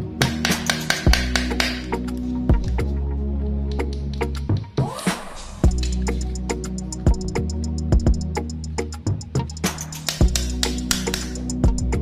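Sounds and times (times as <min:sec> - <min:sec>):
drums: 0:00.0 - 0:02.9, 0:04.3 - 0:12.0
sustained bass notes: 0:05.6 - 0:12.0.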